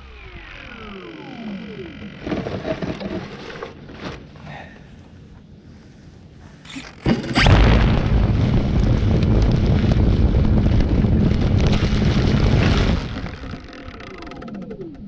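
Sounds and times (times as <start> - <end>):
electric motor and propeller: 0.0 - 4.4, 11.4 - 15.0.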